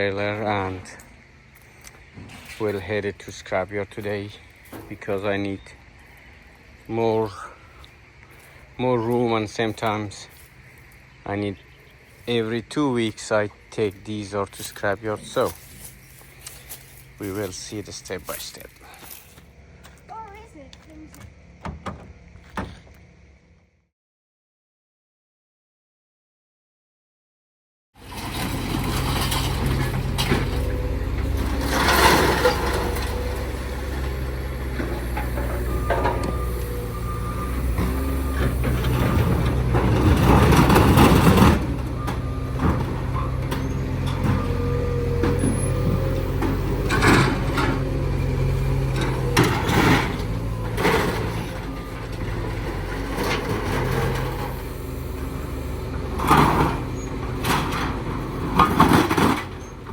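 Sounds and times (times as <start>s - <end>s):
knocks and clanks: 4.6s - 5.1s, 21.1s - 23.0s, 28.1s - 48.1s, 48.8s - 59.9s
heavy vehicle engine running: 28.0s - 59.9s.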